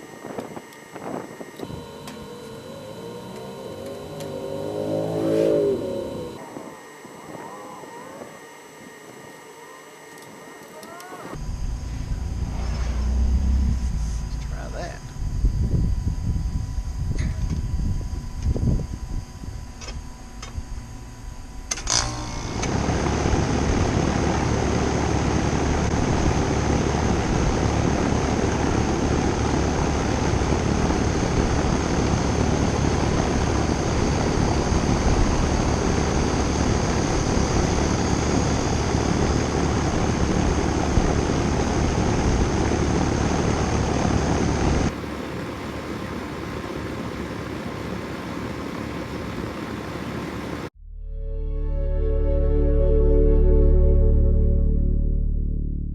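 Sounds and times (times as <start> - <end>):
air conditioner unit whirring: 0.0 - 7.4, 13.8 - 50.7.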